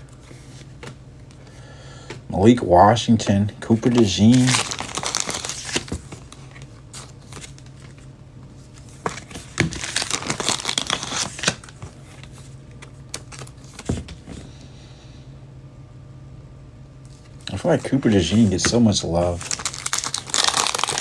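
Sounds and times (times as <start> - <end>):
foil wrapper crinkling and tearing: 4.1 - 6.5, 9.2 - 11.8, 17.8 - 21.0.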